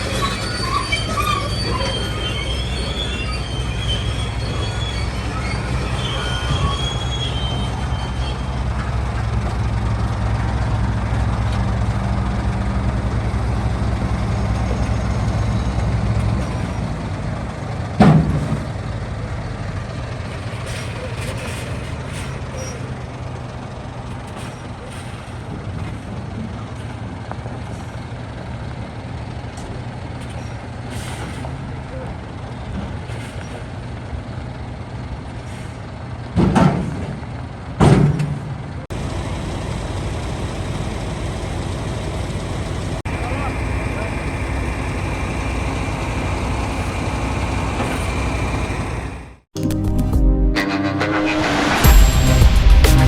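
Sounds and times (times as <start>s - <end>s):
high squeal: 0.0s - 9.4s, 20.4s - 23.1s, 38.9s - 49.4s, 50.7s - 53.0s
truck diesel engine running: 0.0s - 49.5s, 51.4s - 53.0s.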